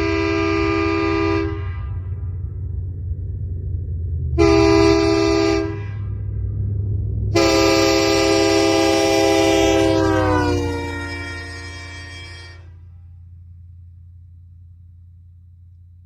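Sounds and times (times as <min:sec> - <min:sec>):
locomotive air horn blasts: 0:00.0 - 0:02.4, 0:04.4 - 0:06.4, 0:07.3 - 0:13.1.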